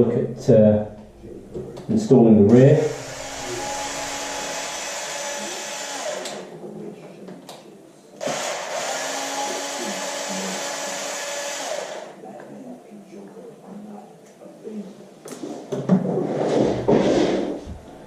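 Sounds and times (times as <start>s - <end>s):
small power tool motor running: 2.8s - 6.5s, 8.2s - 12.2s.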